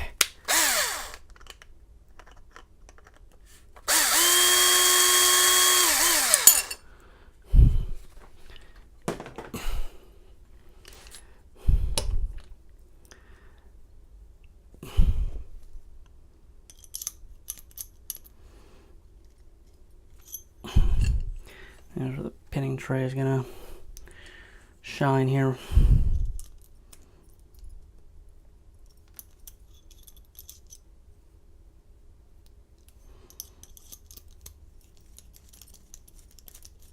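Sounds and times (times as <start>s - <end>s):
cordless drill motor spinning: 0.5s - 1.3s, 3.8s - 6.8s.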